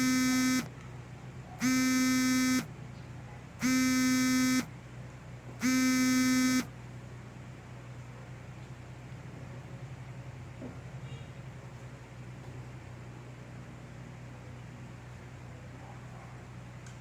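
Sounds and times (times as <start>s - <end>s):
harsh electronic buzzer: 0.0s - 0.7s, 1.6s - 2.7s, 3.6s - 4.7s, 5.6s - 6.7s.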